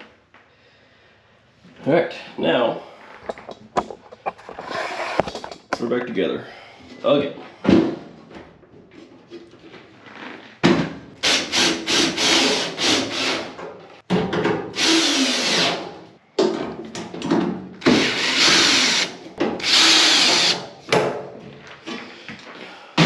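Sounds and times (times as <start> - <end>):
cordless drill driving screws: 17.9 - 20.6.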